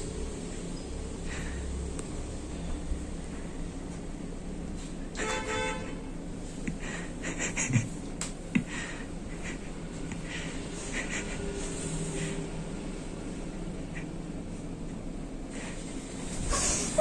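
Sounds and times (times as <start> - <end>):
low background hum: 0.0 - 17.0
short horn toot: 5.2 - 6.0.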